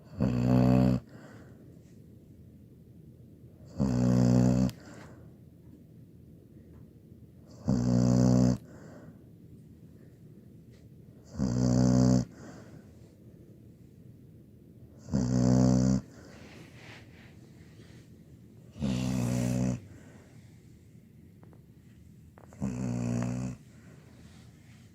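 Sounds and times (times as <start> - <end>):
dog snoring loudly: 0.0 - 1.2, 3.6 - 5.0, 7.5 - 8.9, 11.2 - 12.7, 15.0 - 16.4, 18.7 - 20.2, 22.4 - 23.6
dog breathing softly: 12.2 - 13.3, 15.8 - 21.0, 21.9 - 24.9.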